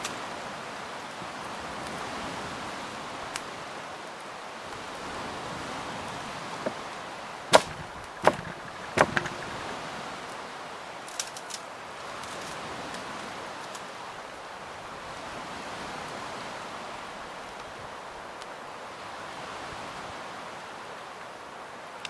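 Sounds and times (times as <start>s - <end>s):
firewood cracking: 6.6s - 10.0s.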